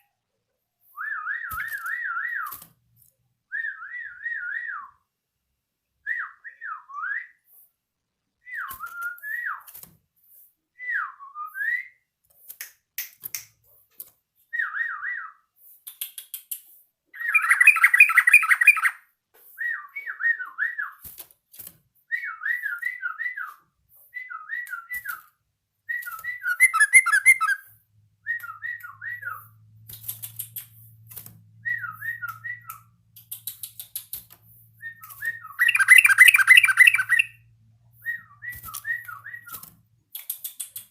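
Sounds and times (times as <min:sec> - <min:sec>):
bird whistled song: 0:08.4 - 0:09.7, 0:14.5 - 0:15.4, 0:17.2 - 0:19.0, 0:19.6 - 0:21.0, 0:22.1 - 0:25.3, 0:25.9 - 0:29.6, 0:31.6 - 0:33.8, 0:34.8 - 0:39.6.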